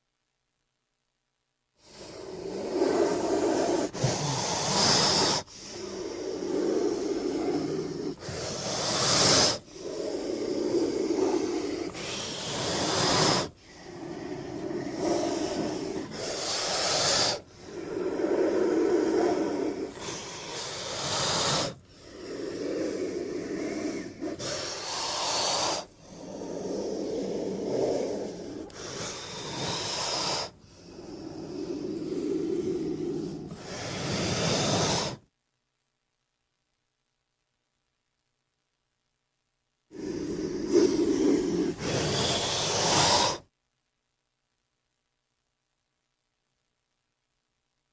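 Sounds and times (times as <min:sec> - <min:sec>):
loud snake hisses: 0:01.8 - 0:35.2, 0:39.9 - 0:43.4
raspy creature breathing: 0:01.8 - 0:35.2, 0:39.9 - 0:43.4.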